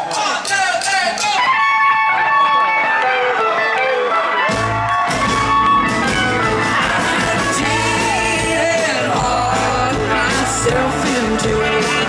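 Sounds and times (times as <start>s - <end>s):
live country band playing: 0.1s - 12.0s
guitar: 1.4s - 12.0s
bass line: 4.5s - 12.0s.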